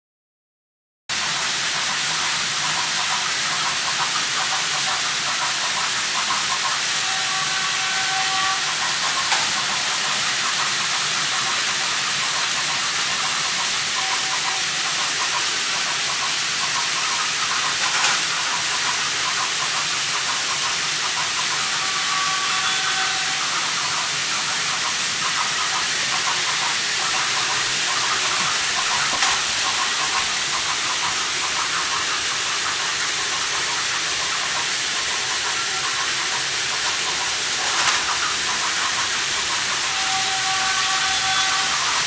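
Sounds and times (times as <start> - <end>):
steam hiss: 1.1 - 42.0.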